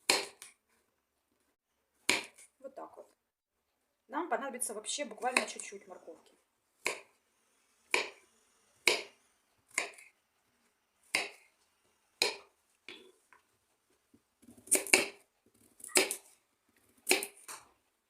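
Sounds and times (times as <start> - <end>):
knife chopping on cutting board: 0.0 - 0.5, 2.1 - 2.4, 6.8 - 7.1, 7.9 - 8.2, 8.8 - 10.1, 11.1 - 11.5, 12.2 - 12.5, 17.0 - 17.6.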